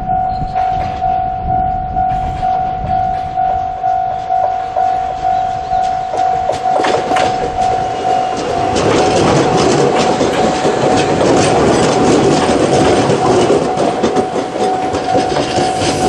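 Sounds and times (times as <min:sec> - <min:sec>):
level-crossing electronic alarm pulses: 0:00.0 - 0:16.0
train wheels clattering over rail joints: 0:04.3 - 0:16.0.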